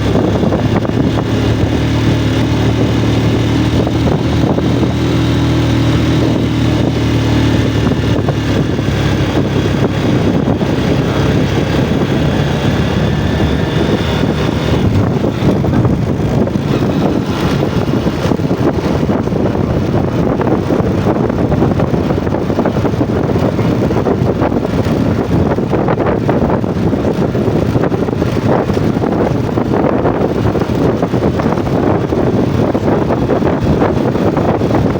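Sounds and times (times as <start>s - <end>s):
motorcycle engine running: 0.0s - 34.9s
steady rumbling rush: 0.0s - 34.9s.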